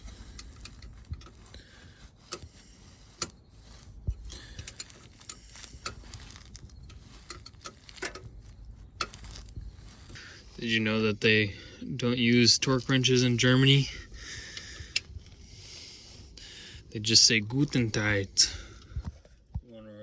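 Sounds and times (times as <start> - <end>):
metal tools clinking: 0.0 - 1.5, 4.2 - 10.2
ratchet wrench clicking: 0.0 - 1.6, 2.3 - 9.5.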